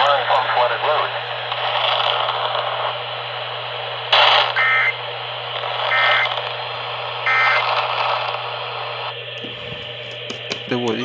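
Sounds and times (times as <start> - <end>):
loud static burst: 0.0 - 9.3
radio static hiss: 0.0 - 11.0
buzzy digital bursts: 5.7 - 6.4, 7.2 - 8.2.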